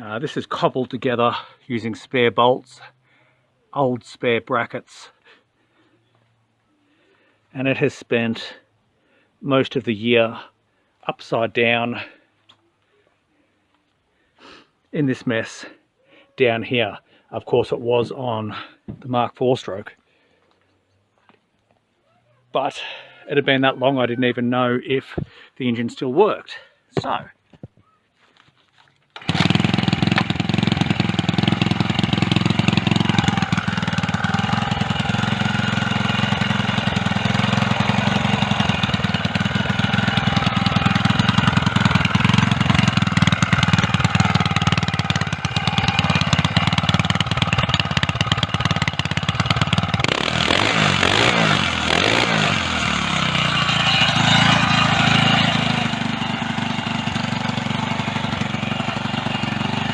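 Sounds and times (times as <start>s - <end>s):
small bicycle engine running: 29.2s - 59.9s.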